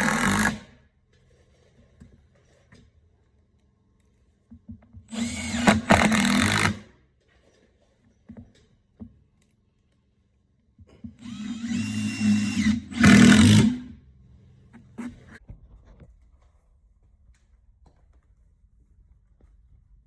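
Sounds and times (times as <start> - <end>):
cordless drill running: 0.0 - 0.7, 5.1 - 6.9, 11.2 - 13.9.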